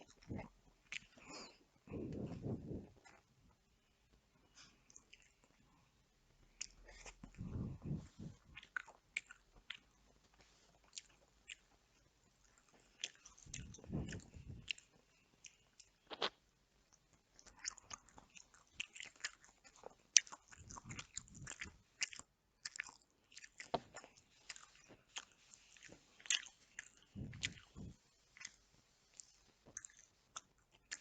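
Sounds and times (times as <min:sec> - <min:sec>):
person chewing and biting: 0:06.5 - 0:31.0
wet mouth clicks: 0:13.0 - 0:16.4, 0:26.2 - 0:31.0.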